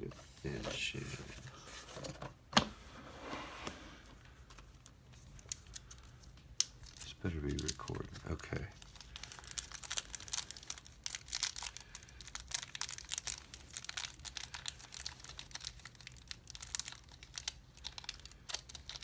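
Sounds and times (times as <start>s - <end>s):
thin metal packet crinkling: 4.5s - 19.0s.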